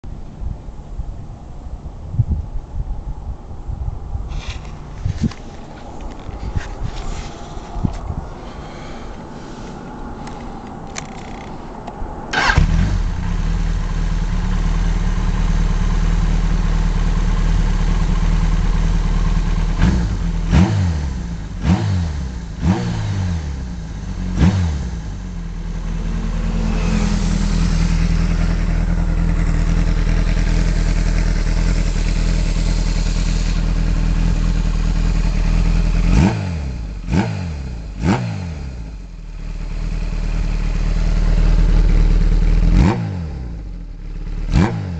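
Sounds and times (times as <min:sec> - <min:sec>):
motorcycle engine revving: 0:12.3 - 0:44.9.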